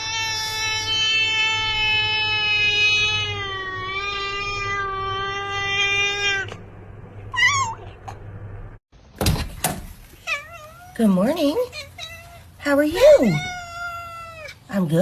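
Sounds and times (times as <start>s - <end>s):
cat yowling: 0.0s - 6.6s, 7.3s - 7.9s, 11.7s - 14.6s.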